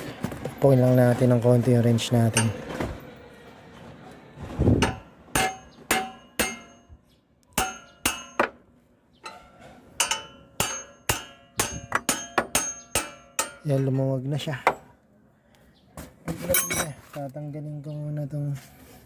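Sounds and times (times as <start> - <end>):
wrench struck with metallic clanks: 4.8 - 7.0, 7.6 - 8.6, 9.2 - 13.9.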